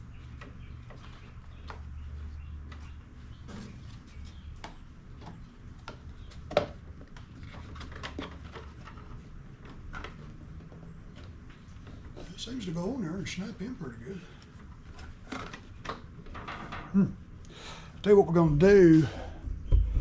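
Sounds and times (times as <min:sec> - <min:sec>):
plastic parts clicking and knocking: 0:04.6 - 0:12.0, 0:14.9 - 0:16.9.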